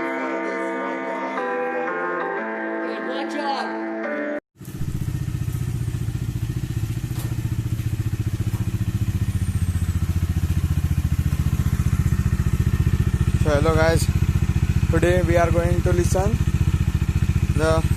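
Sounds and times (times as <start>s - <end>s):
motorcycle exhaust running: 4.6s - 17.9s.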